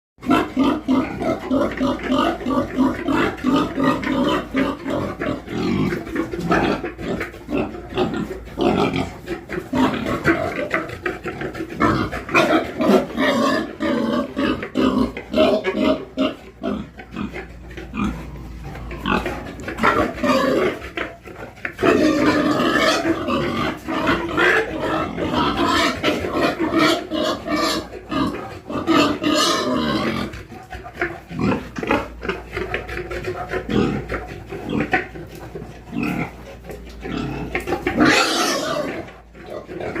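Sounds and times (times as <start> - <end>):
pigs grunting and calling: 0.2 - 40.0
loud high pig call: 21.8 - 30.4, 37.0 - 40.0.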